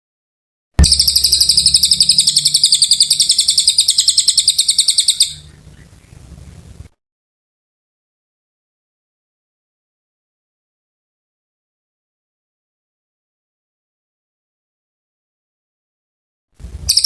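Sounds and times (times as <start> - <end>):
songbird trilling: 0.8 - 6.9.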